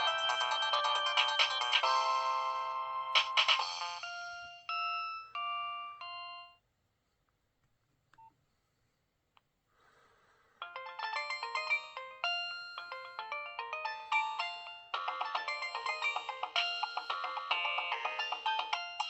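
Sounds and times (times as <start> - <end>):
mobile phone ringtones: 0.0 - 6.6, 10.7 - 19.0.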